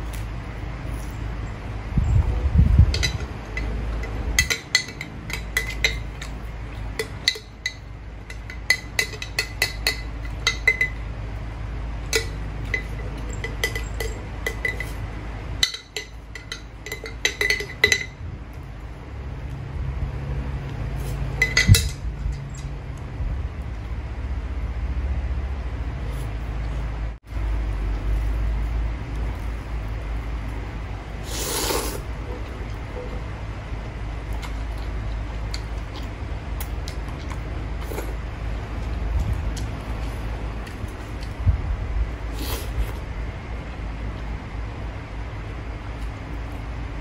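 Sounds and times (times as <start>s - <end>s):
low background rumble: 0.0s - 31.4s
cutlery clinking against a bowl: 2.9s - 11.1s, 12.0s - 18.2s, 21.0s - 22.7s.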